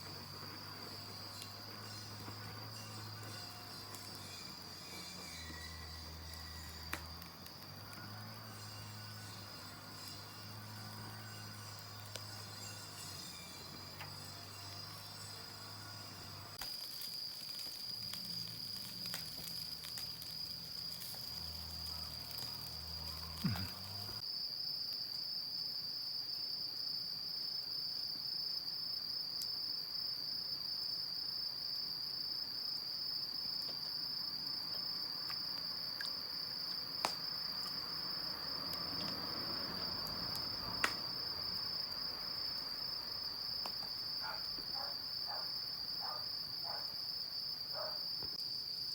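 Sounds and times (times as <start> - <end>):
wood fire popping: 0.0 - 10.8, 11.7 - 24.2, 33.6 - 46.3
insects trilling: 0.0 - 48.9.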